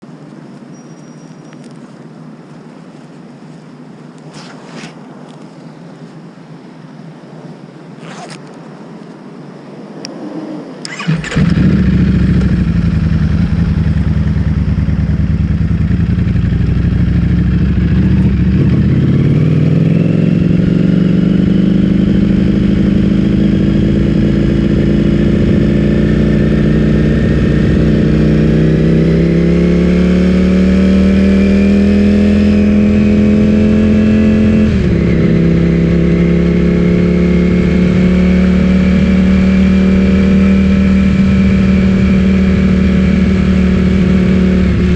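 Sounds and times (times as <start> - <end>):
motorcycle engine revving: 10.8 - 44.9.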